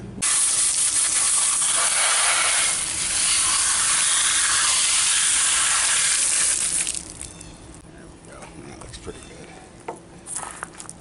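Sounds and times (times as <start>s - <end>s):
hose spraying water jet: 0.2s - 7.1s.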